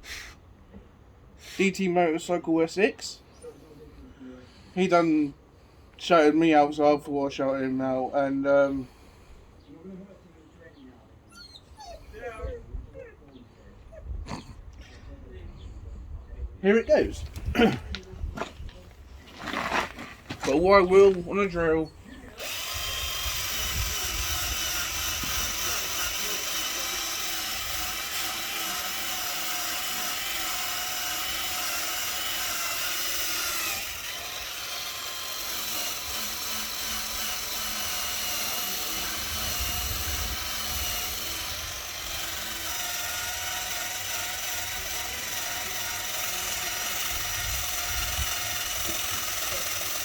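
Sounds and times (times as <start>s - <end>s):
drill wire wheel scraping metal: 19.3s - 50.0s.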